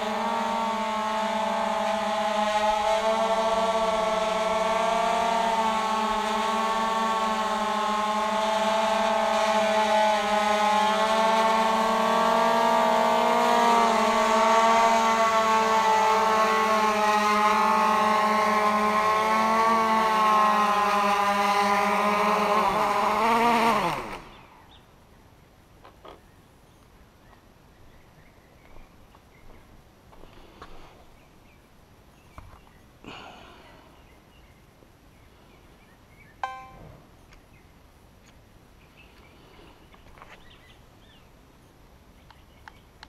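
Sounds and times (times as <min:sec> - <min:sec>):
quadcopter motors whining: 0:00.0 - 0:24.8.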